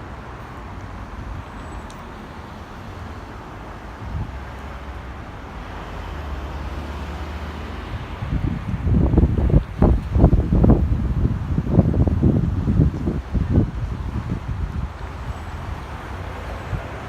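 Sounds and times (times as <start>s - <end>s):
low traffic rumble: 0.0s - 17.0s
wind: 0.0s - 17.0s
wind buffeting microphone: 3.5s - 17.0s.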